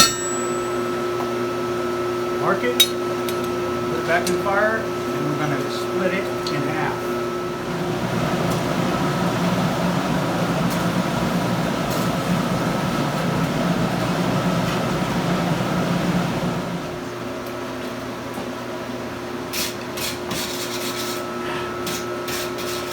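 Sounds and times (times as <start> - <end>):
forge blower rushing air: 0.0 - 17.4.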